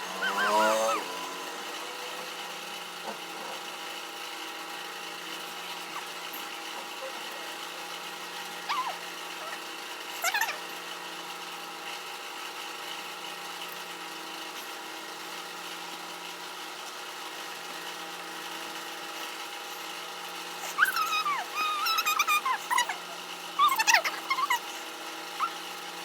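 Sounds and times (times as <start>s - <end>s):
machine hum: 0.0s - 11.5s.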